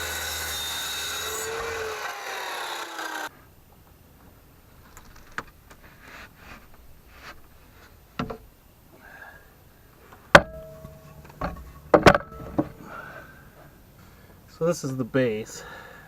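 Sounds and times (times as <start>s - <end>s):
sharp ringing knock: 10.4s - 11.1s
lumber and tools clattering: 10.4s - 12.8s.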